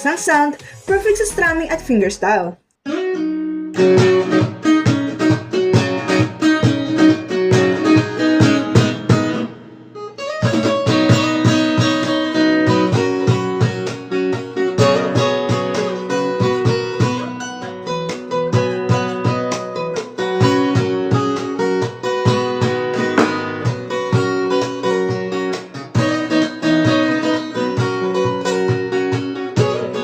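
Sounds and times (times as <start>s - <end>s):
fingerstyle acoustic guitar: 2.9s - 30.0s.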